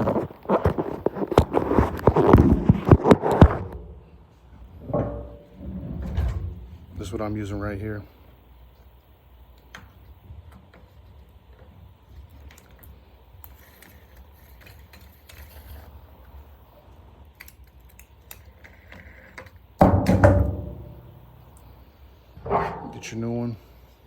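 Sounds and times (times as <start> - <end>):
loud clunk: 4.8 - 6.9, 19.8 - 21.6, 22.4 - 23.1.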